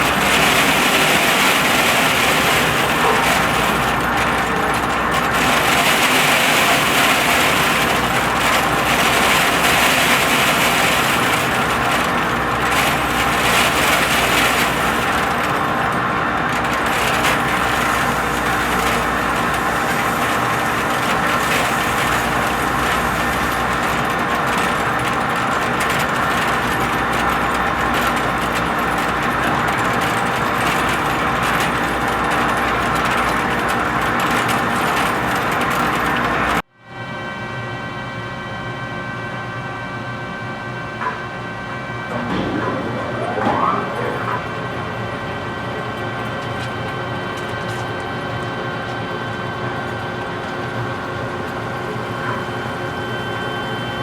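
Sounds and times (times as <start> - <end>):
metal lathe droning: 41.8 - 46.4.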